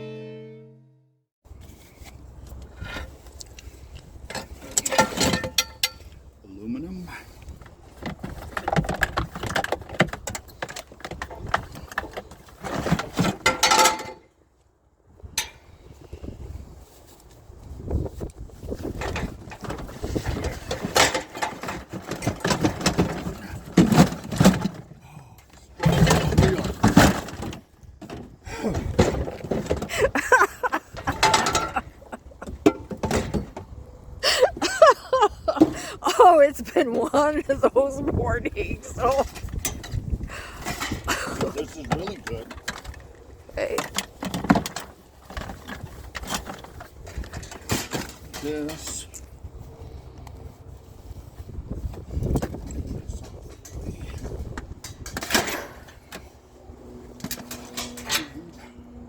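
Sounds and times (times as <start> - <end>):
scrap metal clattering: 4.3 - 6.1, 8.0 - 14.2, 25.7 - 33.8.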